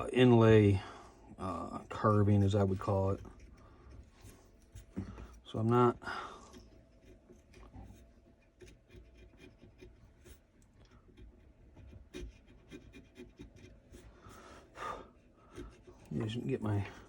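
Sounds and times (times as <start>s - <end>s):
hand chisel scratching and ticking: 1.8s - 14.3s, 15.4s - 17.0s.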